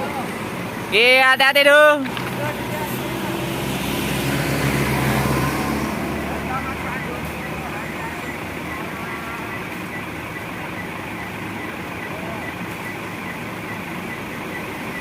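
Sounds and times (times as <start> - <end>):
road traffic passing: 0.0 - 15.0
faint high-pitched beeping tone: 6.4 - 15.0.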